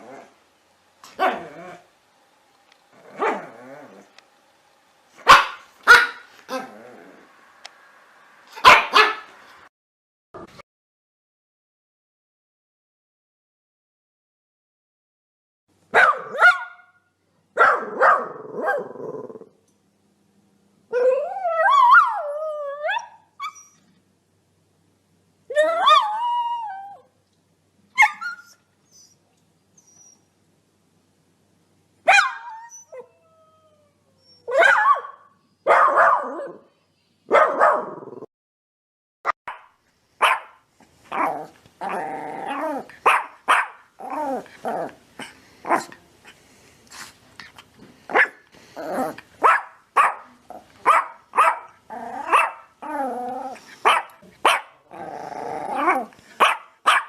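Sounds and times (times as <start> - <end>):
dog barking: 5.2 - 6.3, 8.6 - 9.4, 15.9 - 17.0, 17.6 - 18.9, 32.1 - 32.5, 34.5 - 36.6, 37.3 - 38.0, 39.5 - 41.3, 43.0 - 43.9, 48.1 - 48.4, 49.4 - 52.7, 53.8 - 54.8, 56.4 - 57.0.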